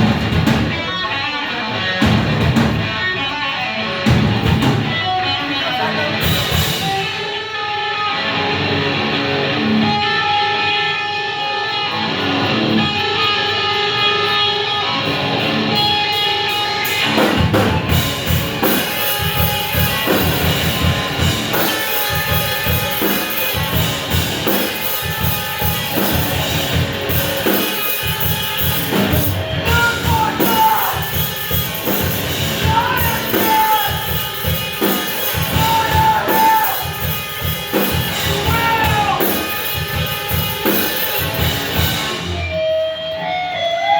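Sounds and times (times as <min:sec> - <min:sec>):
drum kit beat: 0:00.0 - 0:03.3, 0:03.9 - 0:07.4, 0:15.5 - 0:43.1
amplified electric guitar chords: 0:00.0 - 0:43.9.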